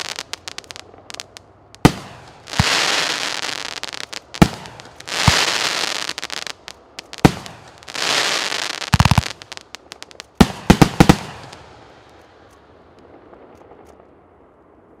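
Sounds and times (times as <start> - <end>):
fireworks bangs with hissing: 0.0 - 13.8
crackling bursts: 0.0 - 15.0.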